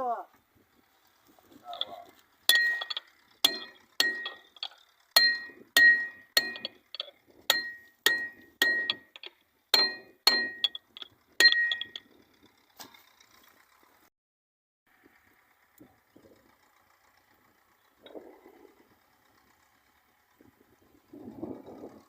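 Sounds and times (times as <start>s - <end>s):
hammer striking steel: 2.5s - 12.0s.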